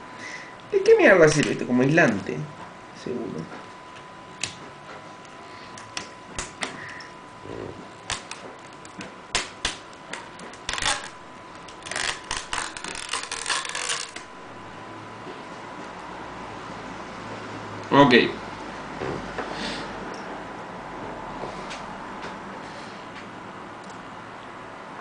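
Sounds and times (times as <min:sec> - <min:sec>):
clicks and rattles of small parts: 0:10.5 - 0:11.2, 0:11.8 - 0:14.3.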